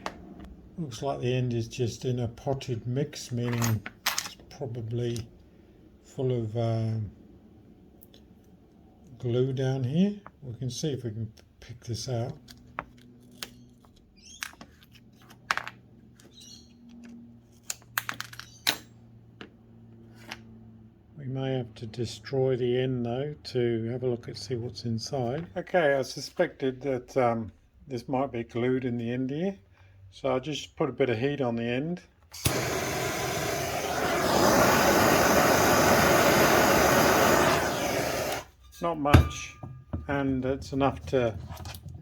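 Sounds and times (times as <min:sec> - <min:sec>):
heat gun switch click: 0:32.4 - 0:33.5
heat gun blowing: 0:32.4 - 0:38.6.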